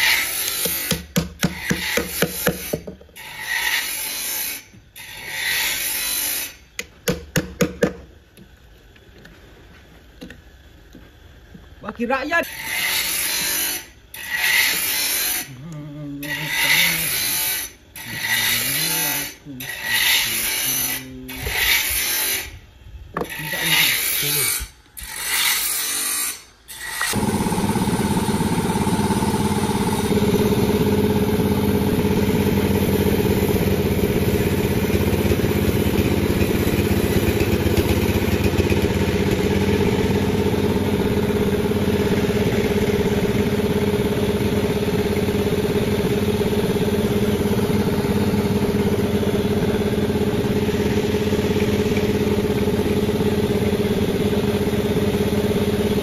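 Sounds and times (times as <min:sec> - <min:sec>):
sawmill engine running: 0:27.0 - 0:56.0.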